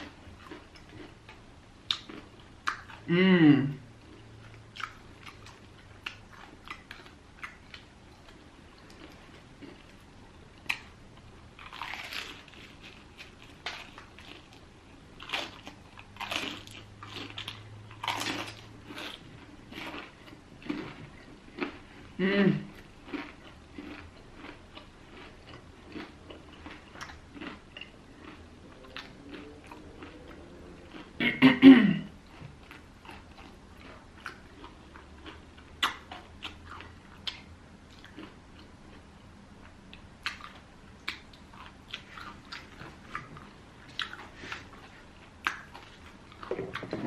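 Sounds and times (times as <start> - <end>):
chewing crispy food: 0.0 - 31.2, 32.1 - 47.0
person humming or clearing throat: 3.1 - 3.8, 22.2 - 22.7, 31.2 - 32.2.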